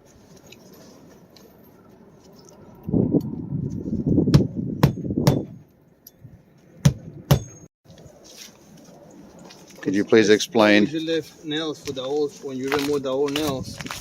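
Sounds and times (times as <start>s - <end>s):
hammer striking nails: 4.3s - 5.6s, 6.8s - 7.6s.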